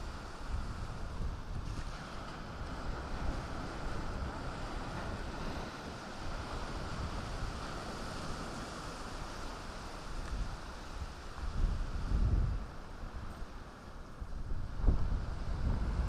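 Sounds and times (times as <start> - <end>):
sea surf on shore: 0.0 - 16.0
wind rumbling on microphone: 0.0 - 16.0.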